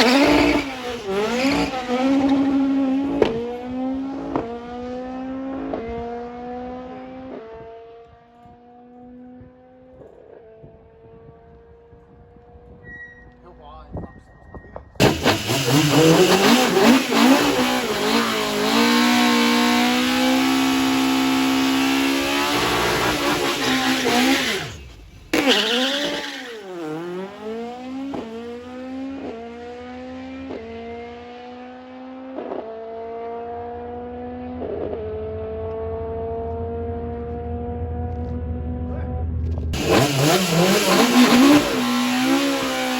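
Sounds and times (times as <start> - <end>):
tyre squeal: 0.0 - 3.3, 12.8 - 13.5, 22.6 - 27.2
race car engine revving: 0.0 - 9.7, 15.0 - 42.9.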